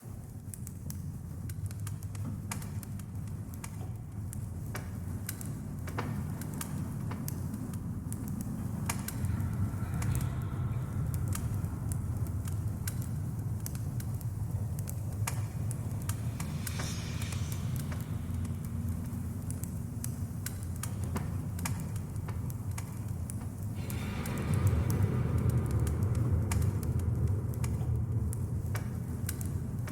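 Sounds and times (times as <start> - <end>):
dark ambient drone: 0.0 - 29.9
crackling clicks: 0.5 - 29.9.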